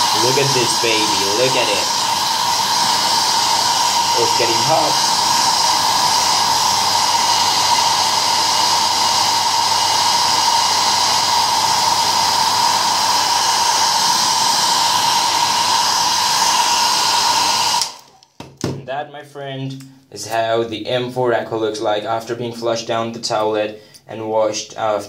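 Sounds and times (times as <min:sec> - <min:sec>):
hair dryer running: 0:00.0 - 0:18.2.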